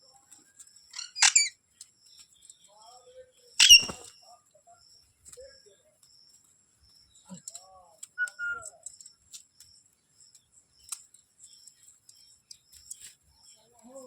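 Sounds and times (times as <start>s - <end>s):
parrot calls and chatter: 0.0s - 14.0s
parrot high whistle: 8.2s - 8.7s.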